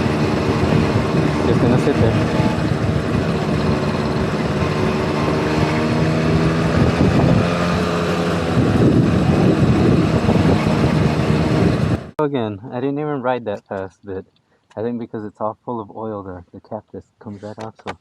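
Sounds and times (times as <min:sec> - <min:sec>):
two-stroke engine running: 0:00.0 - 0:12.1
wind noise on microphone: 0:00.0 - 0:12.1.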